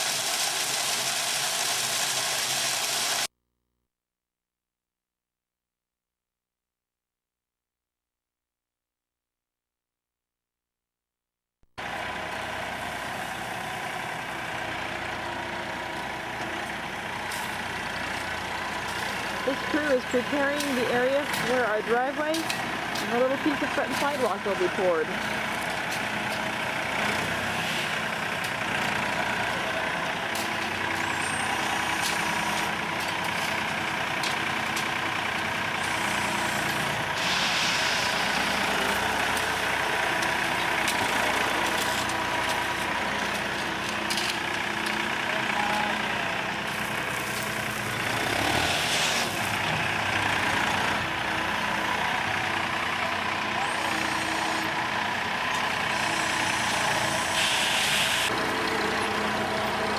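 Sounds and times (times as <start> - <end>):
diesel engine running steadily: 11.8 - 59.9
short bursts of hiss: 37.2 - 38.2, 57.3 - 58.3.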